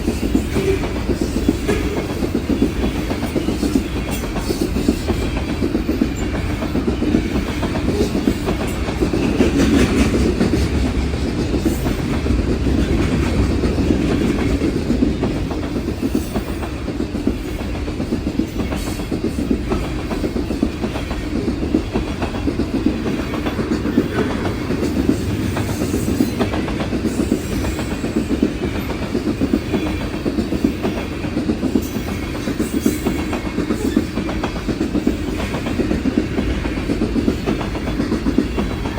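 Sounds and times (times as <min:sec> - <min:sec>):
freight train cars rumbling: 0:00.0 - 0:38.9.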